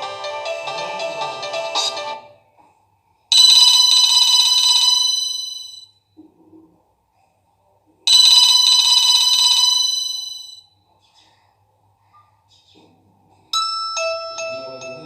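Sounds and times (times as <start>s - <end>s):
trilling telephone ringtone: 3.3s - 6.0s, 8.1s - 10.7s, 13.6s - 15.0s.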